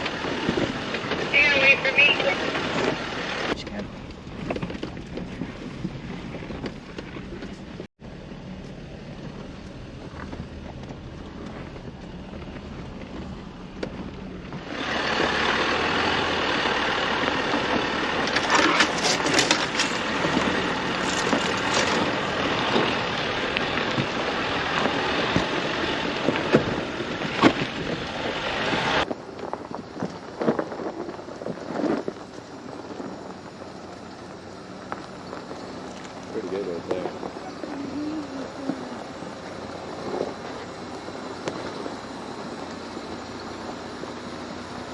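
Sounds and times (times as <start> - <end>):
car engine humming: 0.0 - 44.9
tyres crunching on dirt: 0.0 - 44.9
wind noise: 9.0 - 44.9.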